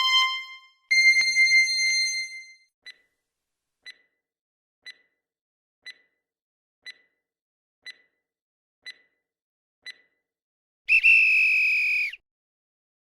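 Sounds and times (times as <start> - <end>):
countdown timer ticking: 0.0 - 3.0, 3.8 - 4.2, 4.8 - 5.2, 5.8 - 6.2, 6.8 - 7.2, 7.8 - 8.2, 8.8 - 9.2, 9.8 - 10.2.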